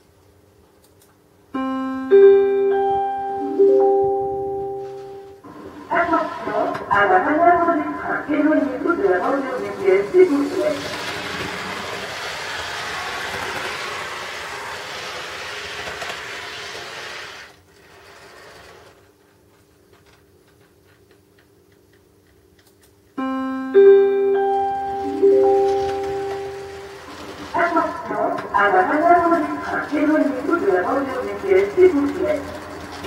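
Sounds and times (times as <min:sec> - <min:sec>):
bell-like announcement chime: 0:01.6 - 0:05.4, 0:23.2 - 0:27.1.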